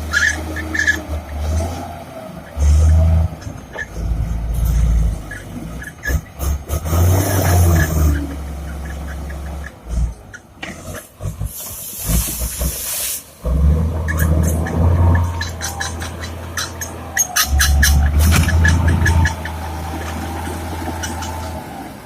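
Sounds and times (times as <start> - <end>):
bulldozer diesel engine droning: 0.0 - 22.0
hissing noise: 11.3 - 13.5.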